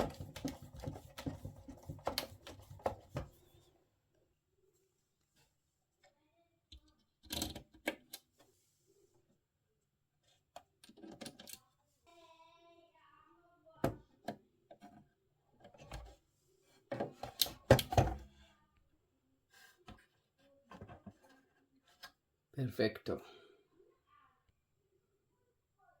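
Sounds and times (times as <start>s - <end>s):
tools knocking on plastic and metal: 0.0s - 3.3s.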